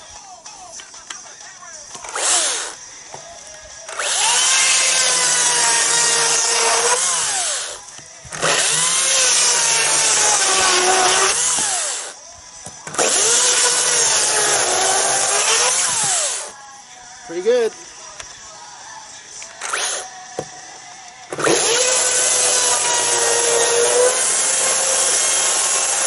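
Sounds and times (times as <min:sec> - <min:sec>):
chainsaw cutting wood: 0:01.9 - 0:02.8, 0:03.8 - 0:12.2, 0:12.8 - 0:16.6, 0:19.6 - 0:20.1, 0:21.3 - 0:26.0.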